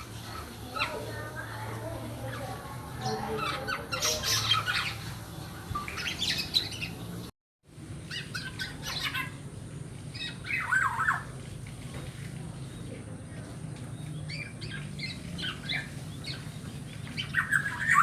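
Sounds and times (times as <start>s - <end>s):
bird harsh chirps: 2.2s - 7.2s, 8.1s - 9.4s, 10.1s - 11.3s, 14.0s - 18.0s.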